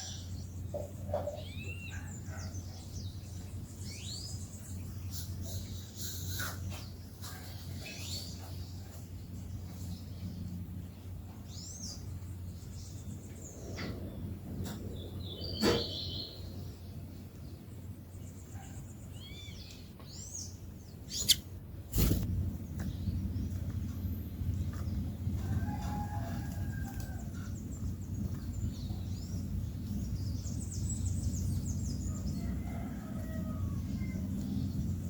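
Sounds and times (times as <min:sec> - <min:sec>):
songbirds chirping: 0:00.0 - 0:35.0.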